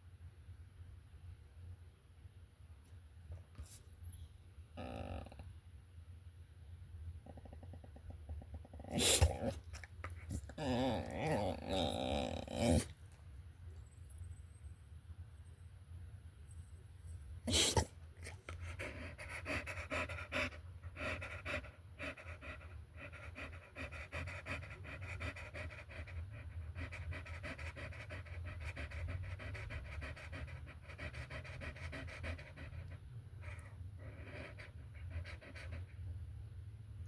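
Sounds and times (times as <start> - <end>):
dog panting: 17.5 - 36.1.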